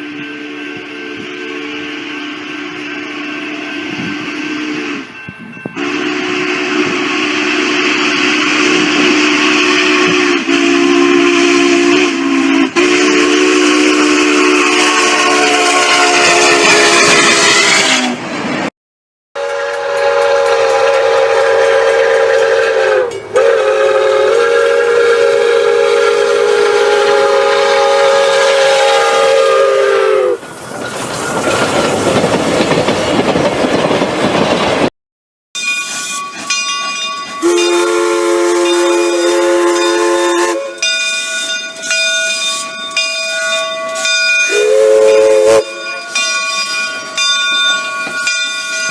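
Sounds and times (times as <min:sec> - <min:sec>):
steam train whistle: 0:00.0 - 0:05.2, 0:05.8 - 0:18.3, 0:19.4 - 0:30.4, 0:37.3 - 0:46.9.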